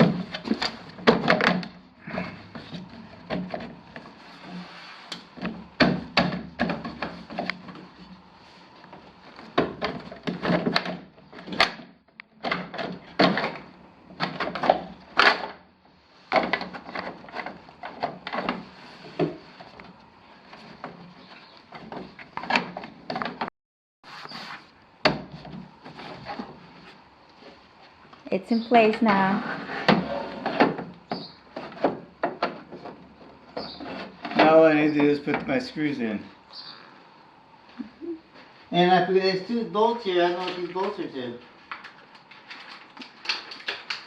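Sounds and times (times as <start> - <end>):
plastic knocking and scraping on frame: 5.4 - 7.9, 29.8 - 35.5.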